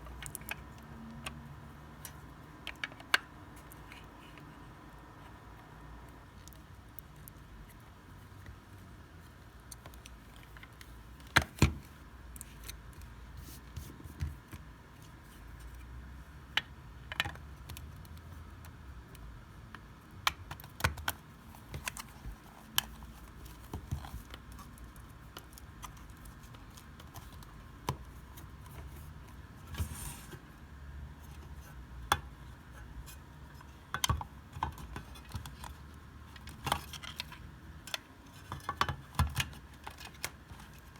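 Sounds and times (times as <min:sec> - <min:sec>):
clicks and taps of handling parts: 0:00.1 - 0:04.6, 0:16.5 - 0:30.4, 0:31.2 - 0:40.9.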